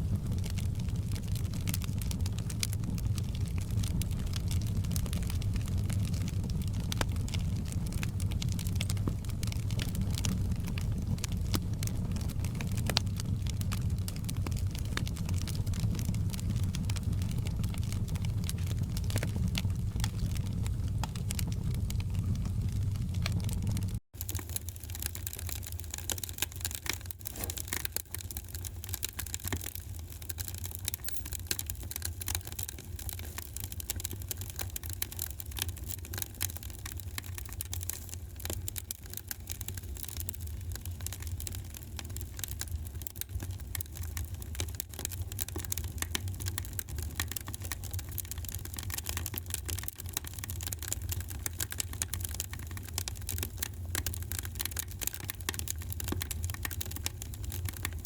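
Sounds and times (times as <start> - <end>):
low steady rumble: 0.0 - 24.0
wood fire crackling: 0.0 - 58.0.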